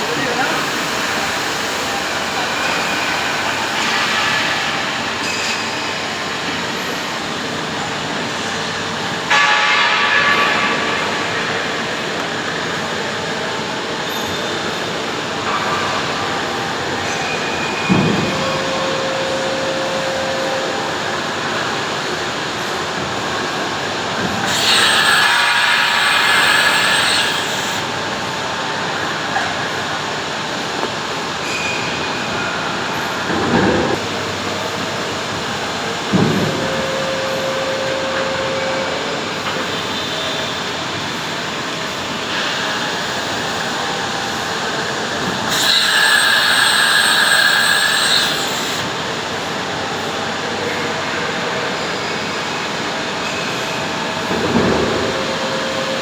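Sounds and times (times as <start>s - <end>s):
machine spindle hiss and whine: 0.0s - 56.0s
machining center running: 16.4s - 29.0s
high-pitched metallic squeal: 23.8s - 27.9s, 42.3s - 49.0s
high hiss: 24.5s - 27.8s, 45.5s - 48.8s.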